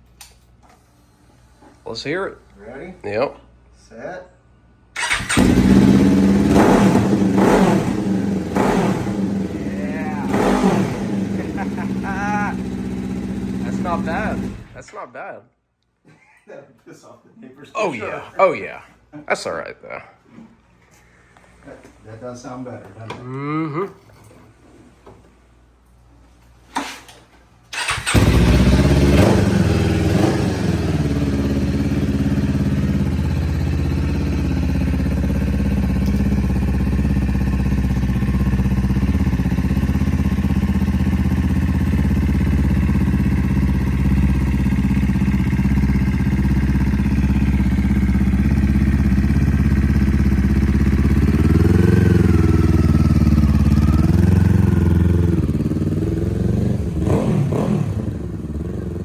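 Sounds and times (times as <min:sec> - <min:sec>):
motorcycle engine cranking: 0:05.0 - 0:09.6, 0:27.7 - 0:42.4
motorcycle engine idling and revving: 0:05.0 - 0:14.8, 0:27.7 - 0:59.0.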